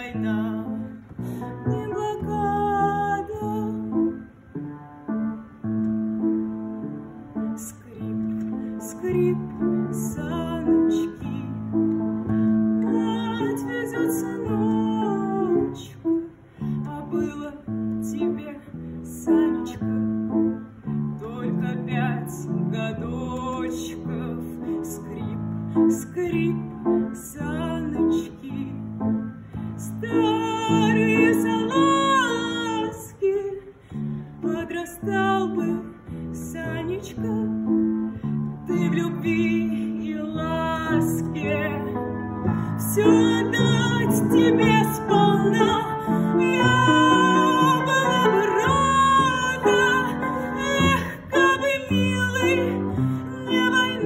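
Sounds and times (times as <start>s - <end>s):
person singing: 7.6s - 20.5s, 29.8s - 33.8s, 38.6s - 54.0s.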